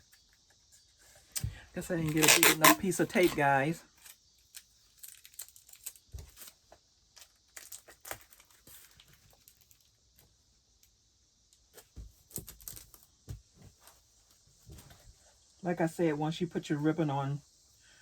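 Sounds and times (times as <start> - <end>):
plastic sleeve crinkling: 1.8 - 3.6, 7.5 - 9.9
sticky tape tearing: 1.9 - 4.1.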